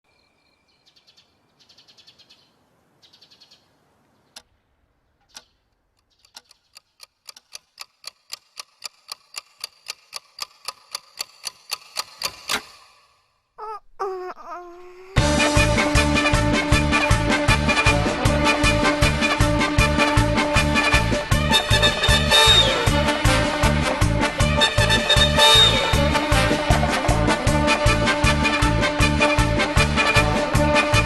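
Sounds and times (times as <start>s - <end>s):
rapid clicking: 5.2s - 13.0s.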